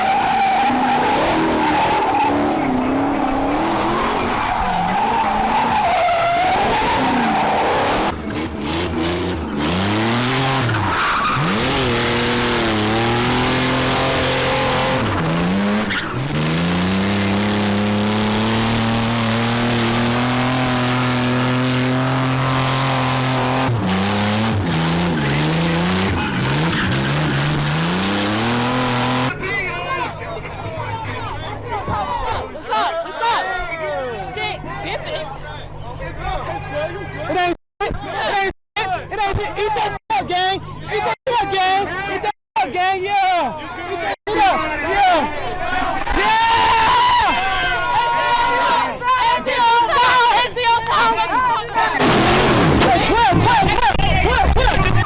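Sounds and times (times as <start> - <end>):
car engine revving: 0.0 - 29.4, 52.0 - 55.0
tyres skidding and squealing: 0.0 - 42.3, 43.4 - 55.0.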